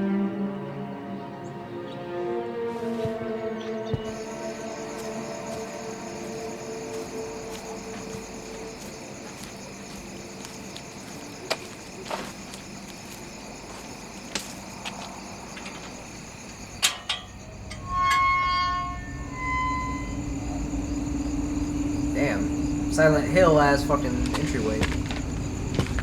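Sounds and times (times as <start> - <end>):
ambient horror soundtrack: 0.0 - 26.0
loud held pitched tone: 4.0 - 9.0, 17.3 - 25.9.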